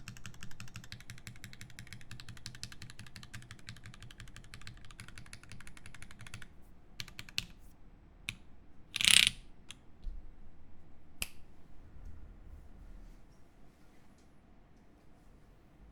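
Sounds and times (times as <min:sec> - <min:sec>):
mechanical keyboard typing: 0:00.0 - 0:07.5, 0:09.0 - 0:09.4.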